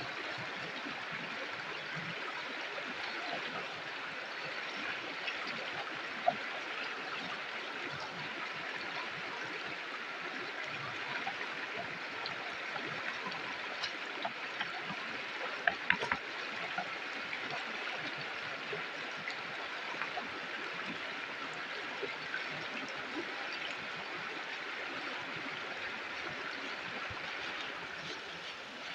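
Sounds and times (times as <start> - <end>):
river flowing over rocks: 0.0 - 28.9.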